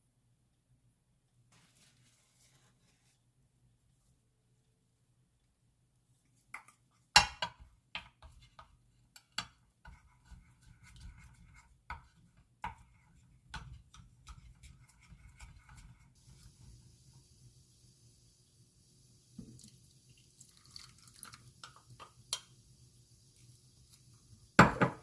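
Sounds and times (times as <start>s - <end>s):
steady hiss: 16.2s - 25.0s.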